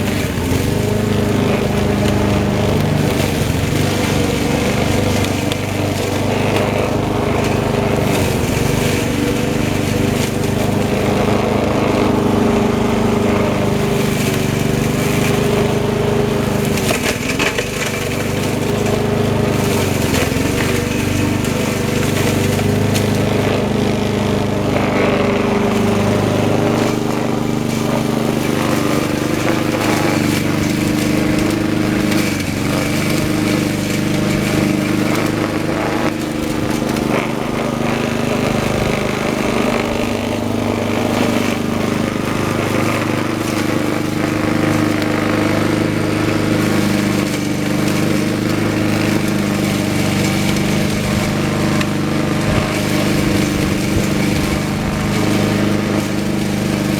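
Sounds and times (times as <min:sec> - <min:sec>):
lawn mower engine running: 0:00.0 - 0:56.9.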